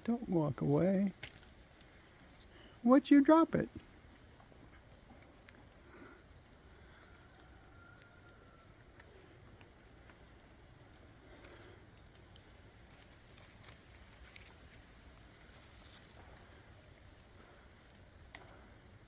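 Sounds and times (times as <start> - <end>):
faint ticking and rustling: 0.0 - 19.0
marmosets chirping: 8.5 - 9.4, 12.4 - 12.6.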